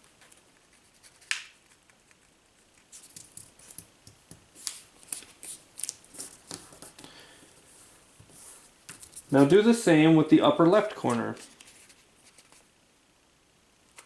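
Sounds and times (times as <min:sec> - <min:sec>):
paper rustling and crinkling: 0:04.5 - 0:07.1, 0:10.7 - 0:12.7.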